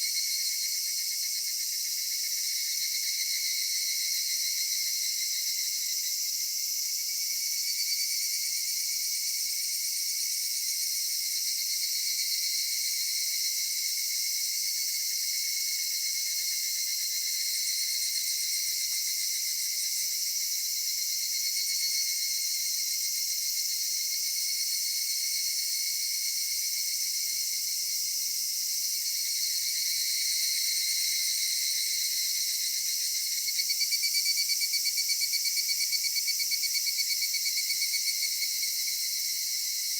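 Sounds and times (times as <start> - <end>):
cicadas buzzing: 28.5 - 39.8.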